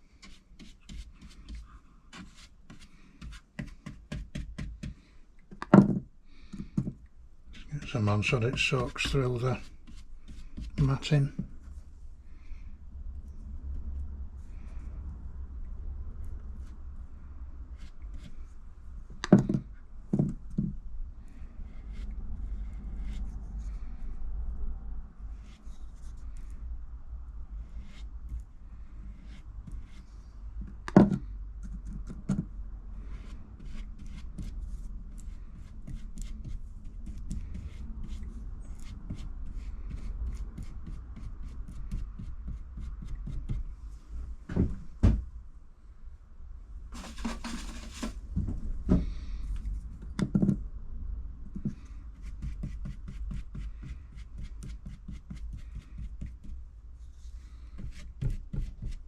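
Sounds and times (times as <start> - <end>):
steady low rumble: 7.2 - 19.2, 20.8 - 31.6, 48.2 - 52.6
brush tapping and clicking: 7.8 - 11.1
rustling: 46.9 - 48.4.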